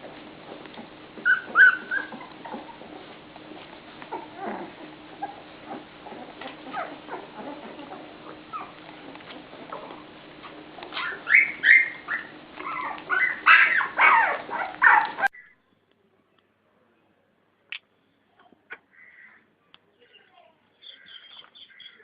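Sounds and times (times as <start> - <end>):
puppy whimpering: 0.1 - 15.3
puppy high-pitched cries: 1.2 - 3.1, 4.1 - 8.8, 10.9 - 15.4.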